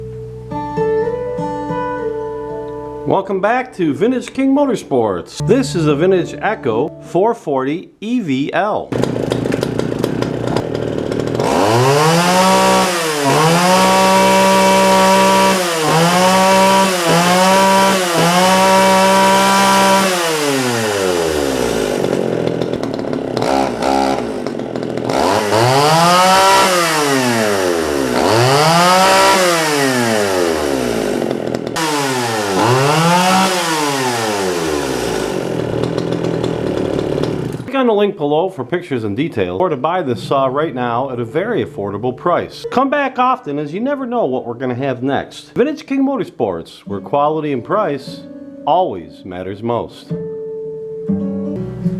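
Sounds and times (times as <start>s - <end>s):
chainsaw revving: 8.9s - 37.7s.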